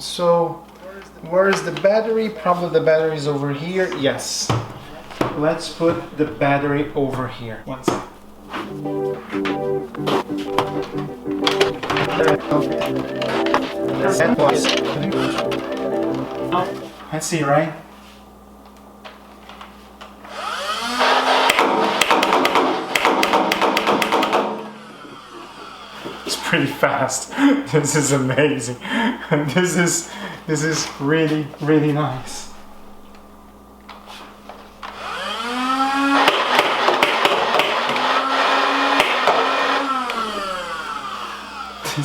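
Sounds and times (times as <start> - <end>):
flywheel motors whining: 34.8 - 36.2, 37.8 - 41.9.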